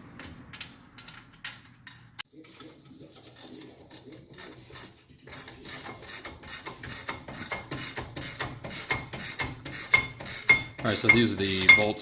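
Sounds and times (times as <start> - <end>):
ratchet wrench clicking: 5.3 - 11.8.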